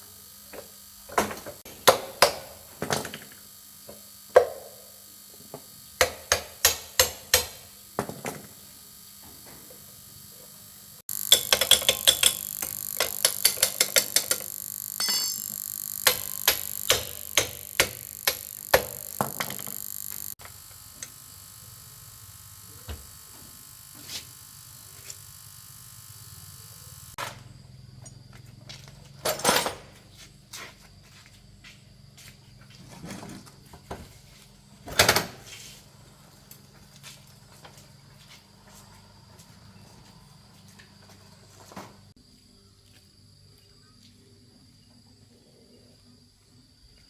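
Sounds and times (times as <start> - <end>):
steady hiss: 0.0 - 27.2
hand tools striking metal: 6.0 - 7.7, 11.1 - 20.4.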